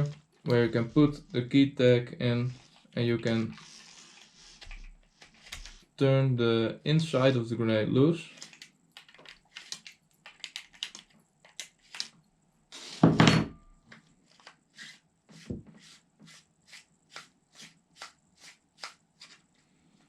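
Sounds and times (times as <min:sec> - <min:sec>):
plastic clicking: 0:08.3 - 0:12.2.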